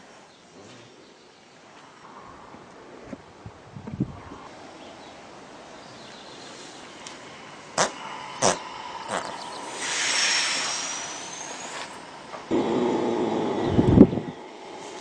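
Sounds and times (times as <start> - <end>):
horse exhaling hissing air: 6.5 - 12.2, 13.2 - 15.0
thin rising whistle: 8.6 - 15.0.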